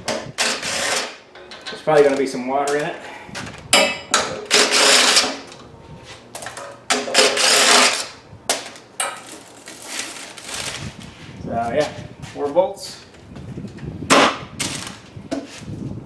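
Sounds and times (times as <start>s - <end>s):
sharp metallic knocks: 3.7s - 5.4s.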